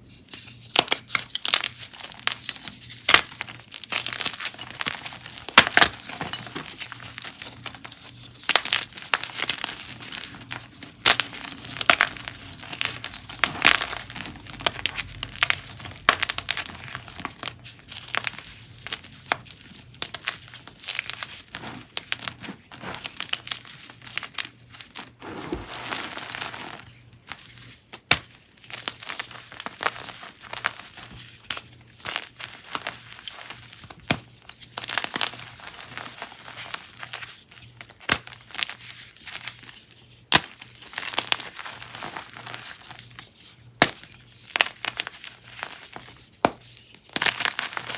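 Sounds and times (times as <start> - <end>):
chalk being crushed: 25.1 - 26.9.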